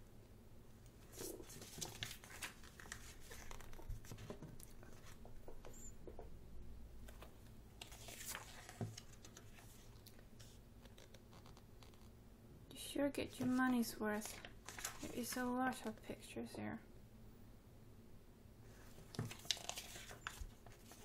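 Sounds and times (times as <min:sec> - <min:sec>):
book pages being turned: 0:01.0 - 0:05.2, 0:07.1 - 0:12.1, 0:13.3 - 0:15.5, 0:18.8 - 0:21.0.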